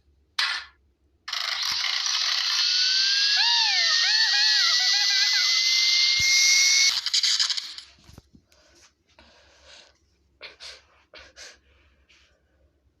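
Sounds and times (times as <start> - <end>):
thin whine rising in pitch: 1.9 - 7.0.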